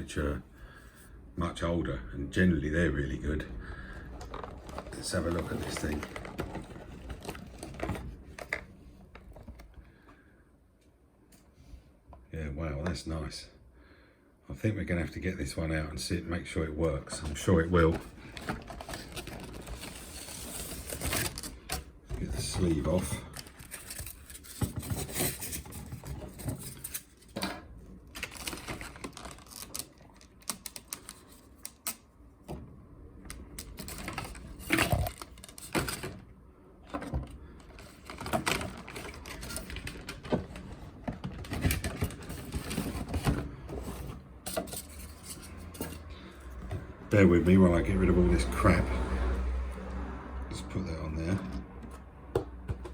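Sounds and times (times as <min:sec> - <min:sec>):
plastic and card packaging rustling: 0:03.7 - 0:09.8, 0:17.0 - 0:32.1, 0:33.3 - 0:36.3, 0:36.9 - 0:48.8.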